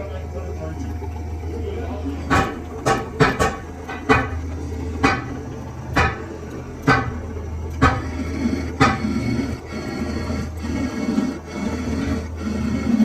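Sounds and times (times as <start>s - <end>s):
low machine hum: 0.0s - 13.0s
hammer striking metal: 2.3s - 4.4s, 5.0s - 8.2s.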